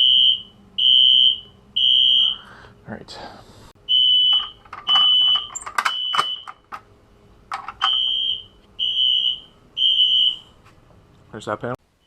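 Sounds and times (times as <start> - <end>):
fire alarm beeping: 0.0 - 2.4, 3.9 - 6.6, 7.8 - 10.5.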